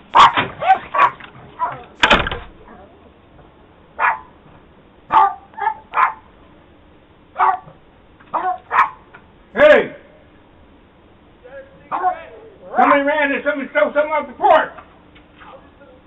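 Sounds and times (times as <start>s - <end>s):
dog barking: 0.1s - 1.9s, 4.0s - 4.4s, 5.1s - 6.3s, 7.4s - 9.1s, 11.9s - 13.0s.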